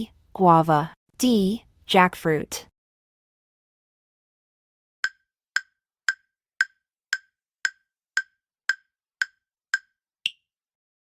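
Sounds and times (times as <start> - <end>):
countdown timer ticks: 5.0 - 10.5.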